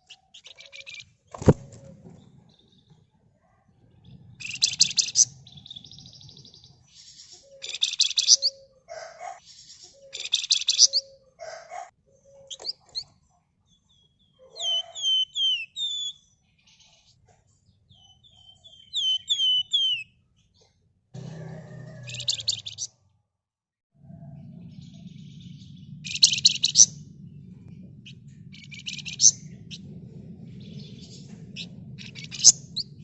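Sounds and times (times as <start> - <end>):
bird whistled notes: 7.0 - 8.7, 9.5 - 11.2, 14.6 - 16.2, 18.6 - 20.1, 25.2 - 27.0, 28.1 - 29.9
songbird buzzing trills: 24.7 - 33.0.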